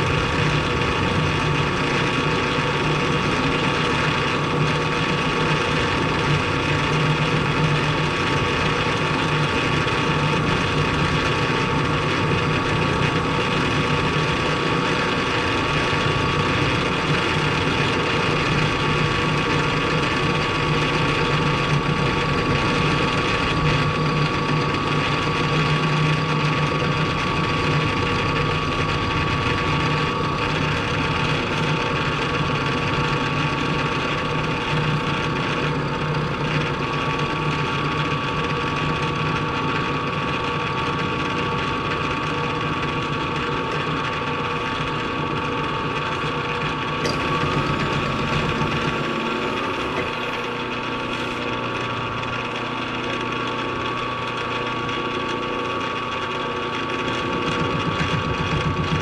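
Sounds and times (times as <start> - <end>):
milling machine cutting steel: 47.0 - 52.0.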